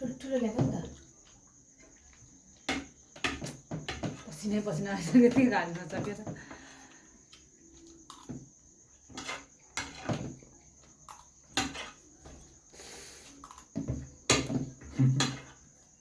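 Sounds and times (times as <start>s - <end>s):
spoon knocking against plate: 13.6s - 15.5s.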